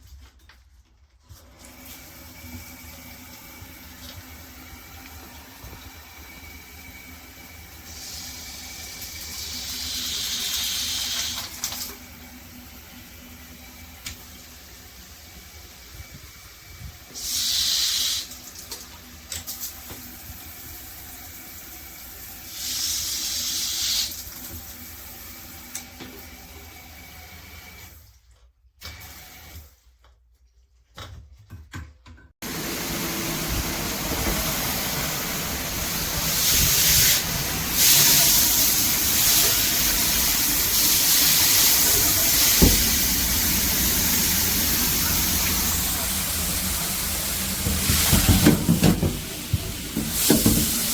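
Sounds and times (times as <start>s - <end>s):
shower head spraying water: 1.9s - 12.0s, 17.1s - 18.8s, 22.4s - 24.4s, 32.4s - 50.9s.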